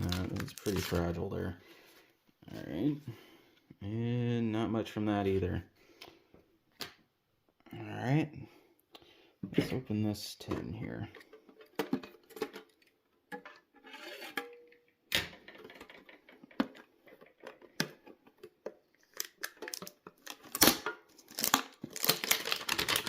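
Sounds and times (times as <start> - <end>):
foil pack tearing and crinkling: 0.0 - 1.2, 19.1 - 23.0.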